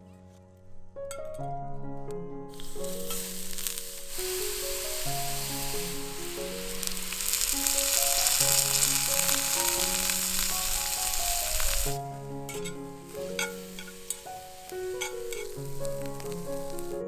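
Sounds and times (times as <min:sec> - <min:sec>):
background music: 0:00.0 - 0:17.0
food sizzling in a skillet: 0:02.5 - 0:17.0.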